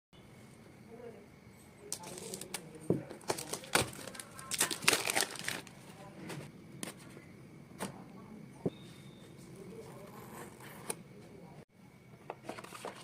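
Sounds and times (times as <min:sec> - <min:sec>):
packaging crinkling: 0:01.9 - 0:05.8.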